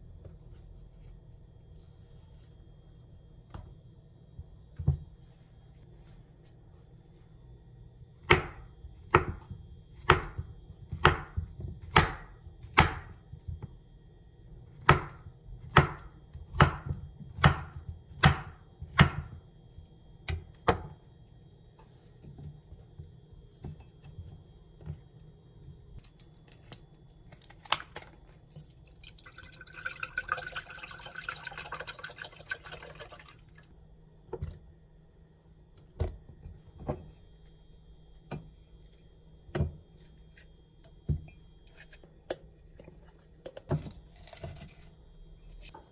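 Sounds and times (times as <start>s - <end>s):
knife chopping on cutting board: 8.2s - 13.2s, 14.8s - 19.4s.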